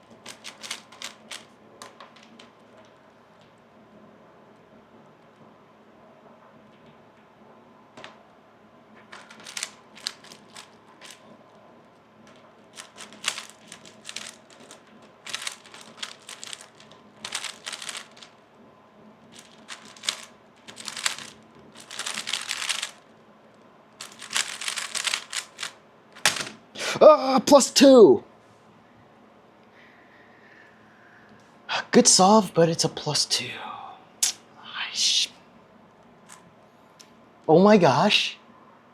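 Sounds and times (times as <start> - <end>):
puzzle cube plastic clicking: 0.0 - 2.4, 9.1 - 11.2, 12.7 - 18.4, 19.3 - 23.1, 24.0 - 26.6.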